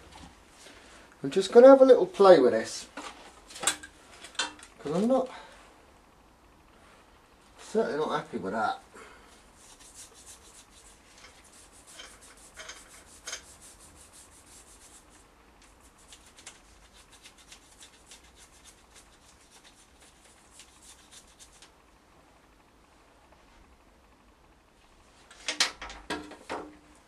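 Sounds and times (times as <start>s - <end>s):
hand rubbing engine part: 9.6s - 21.6s.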